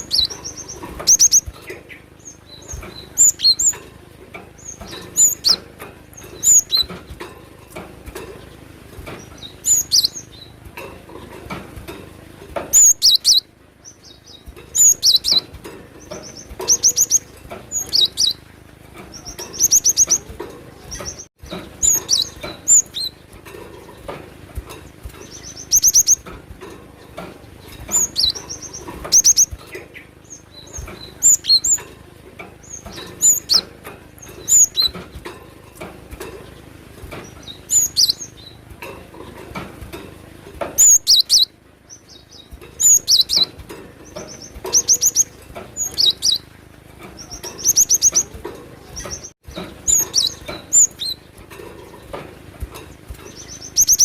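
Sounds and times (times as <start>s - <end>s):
bird singing rapid trills: 0.0s - 11.9s, 12.6s - 39.4s, 40.6s - 54.0s.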